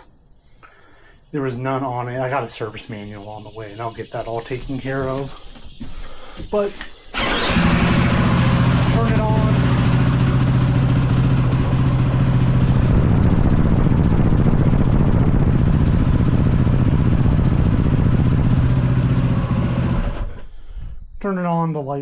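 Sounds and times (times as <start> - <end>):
motorcycle engine running: 7.2 - 20.4.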